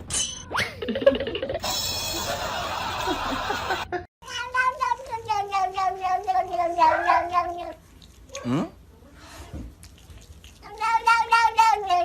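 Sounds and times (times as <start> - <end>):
cat yowling: 6.7 - 7.7.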